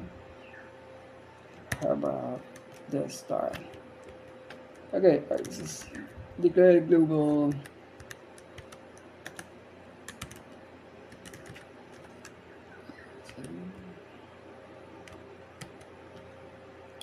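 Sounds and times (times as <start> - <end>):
keyboard typing clicks: 7.2 - 9.5, 10.1 - 10.5, 11.1 - 12.4.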